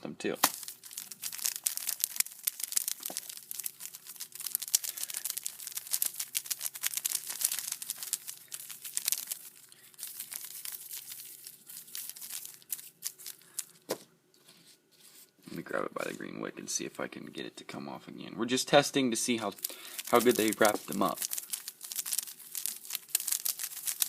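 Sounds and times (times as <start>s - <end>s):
firecracker pack rustling: 0.4s - 14.8s, 19.2s - 24.0s.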